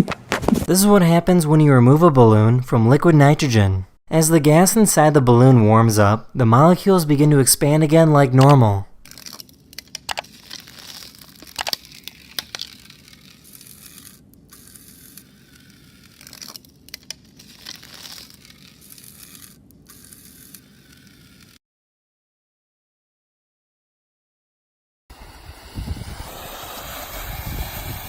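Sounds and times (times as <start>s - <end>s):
rubber balloon crinkling and crackling: 0.0s - 0.8s, 8.4s - 21.6s.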